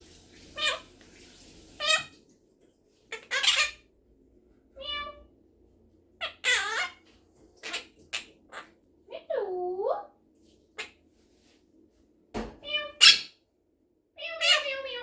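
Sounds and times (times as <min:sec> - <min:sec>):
parrot imitating cat meow: 0:00.6 - 0:00.9, 0:01.8 - 0:02.1, 0:03.1 - 0:03.8, 0:04.8 - 0:05.3, 0:06.2 - 0:07.0, 0:12.6 - 0:13.4, 0:14.2 - 0:15.0.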